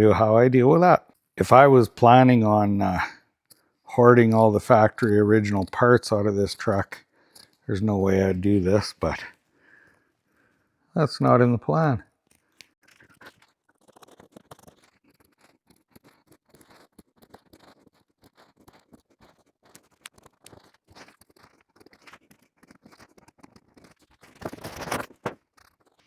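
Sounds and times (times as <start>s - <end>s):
snips scratches and clicks: 2.8s - 9.4s, 12.2s - 26.0s.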